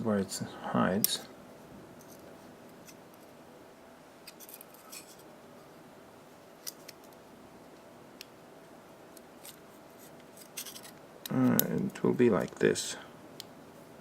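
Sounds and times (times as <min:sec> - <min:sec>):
low room hum: 0:00.0 - 0:14.0
metallic clicks and scrapes: 0:04.2 - 0:05.3, 0:09.4 - 0:12.0.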